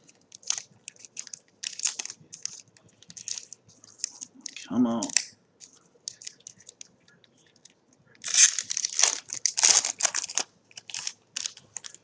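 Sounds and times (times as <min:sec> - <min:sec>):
wrapper tearing and crinkling: 0:00.0 - 0:05.3, 0:08.2 - 0:12.0.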